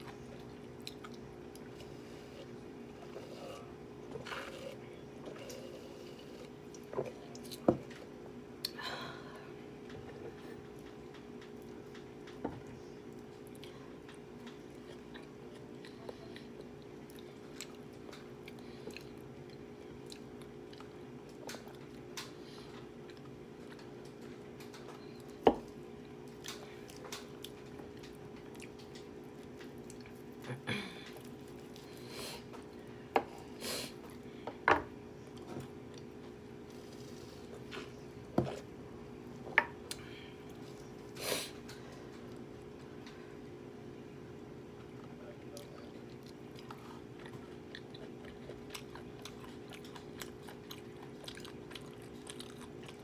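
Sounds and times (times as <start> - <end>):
person chewing: 0.0 - 8.0, 13.4 - 24.0, 26.2 - 32.6, 45.5 - 53.0
steady low hum: 0.0 - 53.0.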